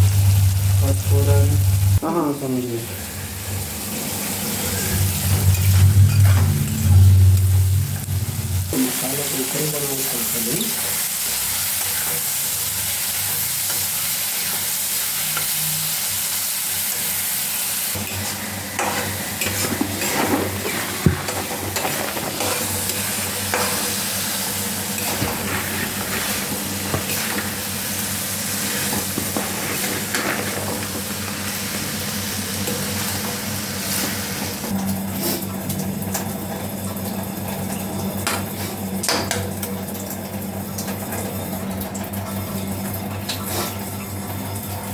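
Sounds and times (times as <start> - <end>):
vegetables sizzling in hot oil: 0.0 - 2.0, 6.6 - 34.7.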